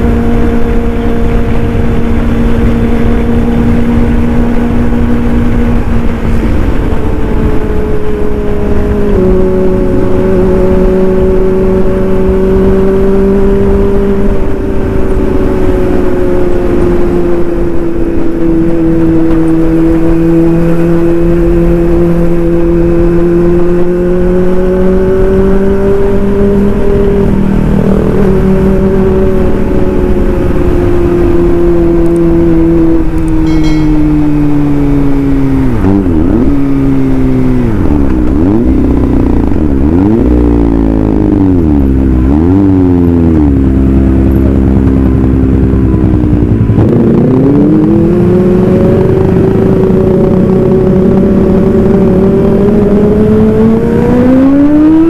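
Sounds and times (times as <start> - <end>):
motorcycle engine cruising: 0.0 - 55.0.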